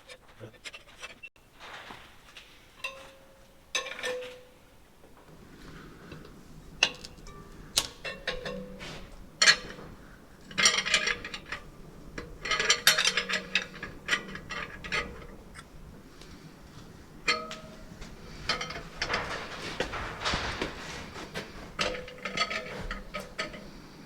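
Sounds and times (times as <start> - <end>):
tools and steel parts clinking: 2.8 - 4.7, 6.8 - 15.7, 17.2 - 24.0.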